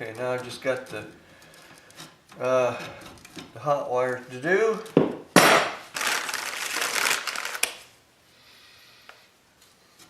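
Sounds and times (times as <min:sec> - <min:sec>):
electrical wires rustling and scraping: 0:00.0 - 0:05.0.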